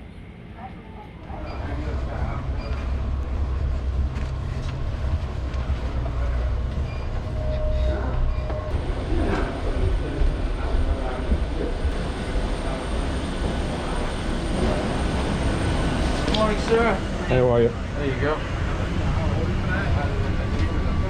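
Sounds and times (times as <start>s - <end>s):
low mechanical rumble: 1.2s - 16.2s.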